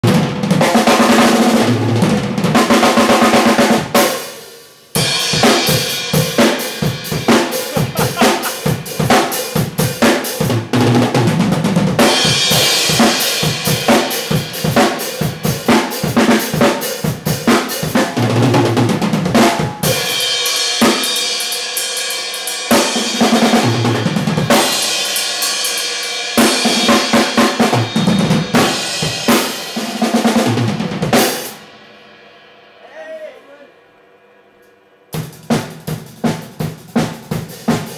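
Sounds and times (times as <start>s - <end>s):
snare and tom fills: 0.0s - 20.2s
bass drum: 5.0s - 14.8s.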